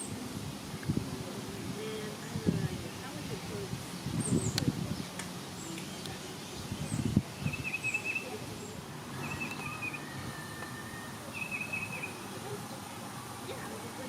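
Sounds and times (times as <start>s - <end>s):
faint high chirps: 5.6s - 12.6s
bird trilled call: 6.9s - 12.4s.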